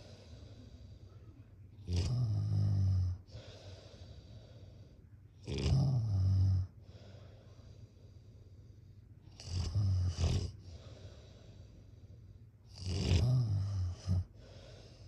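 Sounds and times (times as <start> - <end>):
deep snoring: 1.8 - 4.0, 5.4 - 6.7, 9.3 - 11.4, 12.7 - 15.0.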